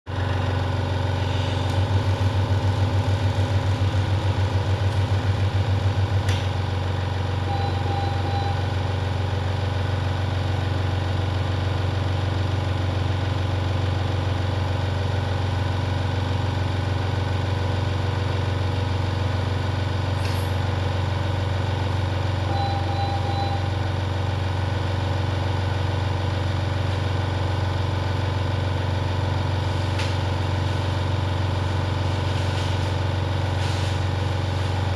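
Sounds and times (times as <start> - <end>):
ventilator humming: 0.1 - 6.9, 29.6 - 34.9
faint short beeps: 7.5 - 8.8, 22.5 - 23.8.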